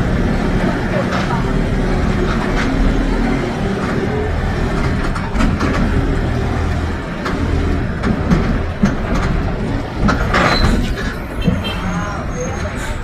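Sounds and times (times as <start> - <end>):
bus diesel engine running: 0.0 - 13.0.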